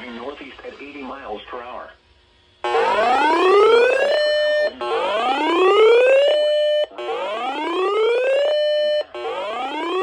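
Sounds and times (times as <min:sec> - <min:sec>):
rising electronic alert whoop: 0:02.7 - 0:10.0.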